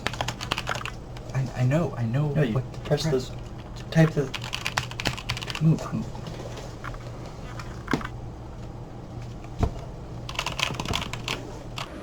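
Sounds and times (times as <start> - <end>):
keyboard typing: 0.0 - 1.3, 3.4 - 5.8, 9.4 - 12.0
low steady hum: 0.0 - 12.0.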